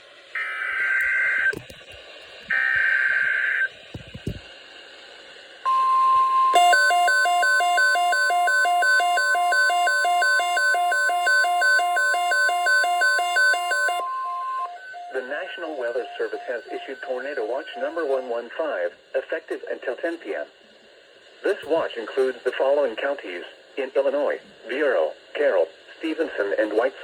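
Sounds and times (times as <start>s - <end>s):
digital data tone bursts: 5.7s - 18.5s
single-pitch warning alarm tone: 5.7s - 18.5s
two-pitch beeping alarm: 5.7s - 18.5s.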